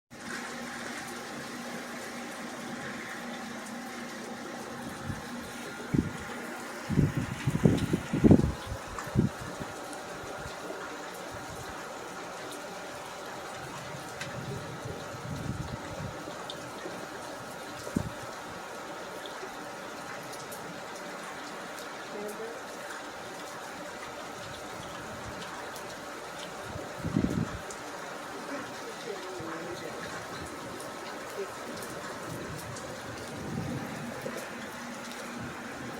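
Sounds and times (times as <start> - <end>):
water trickling and splashing: 0.1 - 35.9
steady rain falling: 0.2 - 35.9
wind buffeting microphone: 4.9 - 9.8, 13.8 - 16.2, 17.9 - 18.2, 26.6 - 27.7, 31.7 - 34.5.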